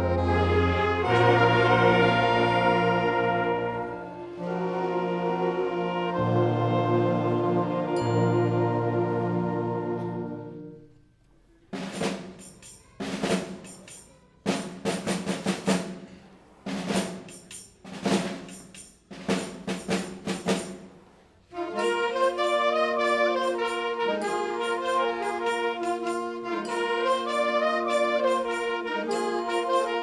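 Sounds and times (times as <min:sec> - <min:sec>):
concert band playing: 0:00.0 - 0:10.7, 0:21.6 - 0:30.0
brass chord: 0:00.0 - 0:10.9, 0:21.5 - 0:30.0
drum hits and rolls: 0:11.7 - 0:21.1.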